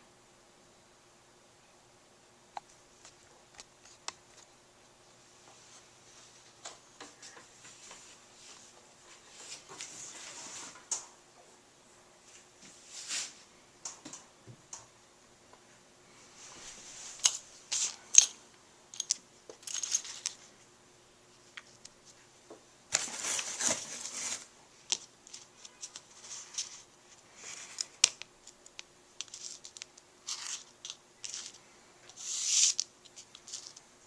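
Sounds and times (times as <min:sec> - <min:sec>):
rustling and scratching: 0:05.4 - 0:11.0, 0:16.4 - 0:18.3, 0:22.9 - 0:34.0.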